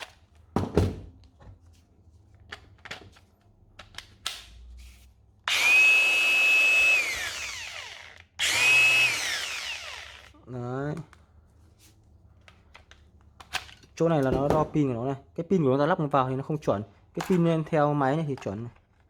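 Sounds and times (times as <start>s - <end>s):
angle grinder whining: 5.5s - 10.4s
grinder disc spinning down: 5.5s - 10.4s.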